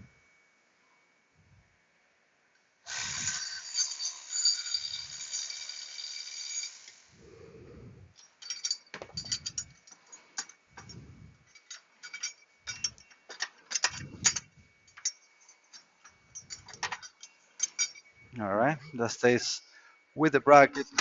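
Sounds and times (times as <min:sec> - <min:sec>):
metallic clicks of tools and bolts: 0:08.2 - 0:18.1, 0:20.7 - 0:21.0.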